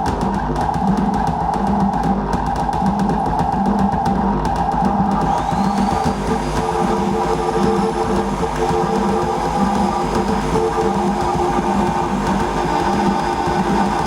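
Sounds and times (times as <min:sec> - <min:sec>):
pulsing low tone: 0:00.0 - 0:14.0
vacuum cleaner motor drone: 0:05.2 - 0:14.0
held pitched tones: 0:05.3 - 0:14.0.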